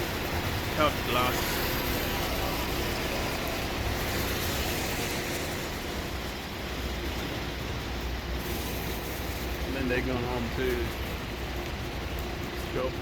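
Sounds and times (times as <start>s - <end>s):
traffic rumble: 0.0s - 13.0s
even hiss: 8.3s - 11.0s.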